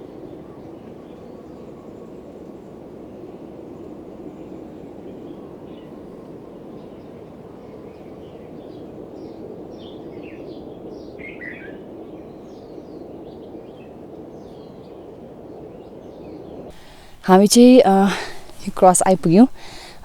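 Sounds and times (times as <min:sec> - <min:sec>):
low rushing background noise: 0:15.0 - 0:20.0.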